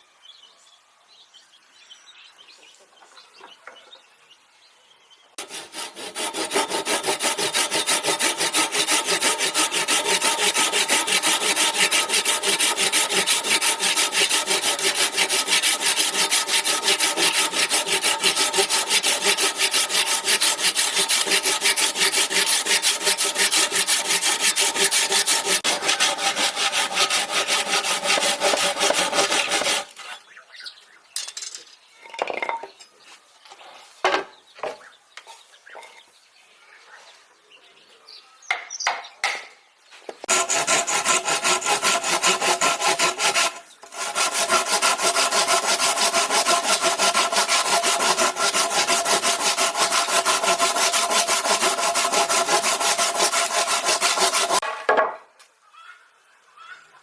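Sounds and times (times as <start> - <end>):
saw rasping through wood: 5.4 - 30.2, 40.2 - 54.7
knocks and scrapes: 22.5 - 30.2.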